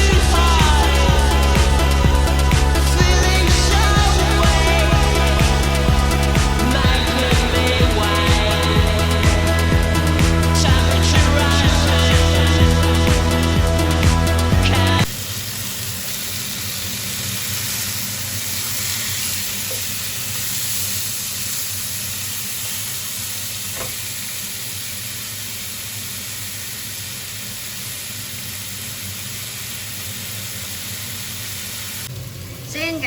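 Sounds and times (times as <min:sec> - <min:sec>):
background music: 0:00.0 - 0:15.1
lamb chops sizzling on a grill: 0:15.0 - 0:32.5.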